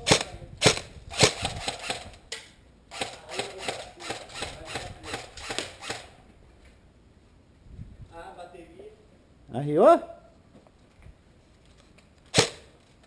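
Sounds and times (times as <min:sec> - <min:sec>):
electric airsoft gun firing: 0:00.0 - 0:02.2, 0:02.9 - 0:06.2, 0:12.3 - 0:12.7.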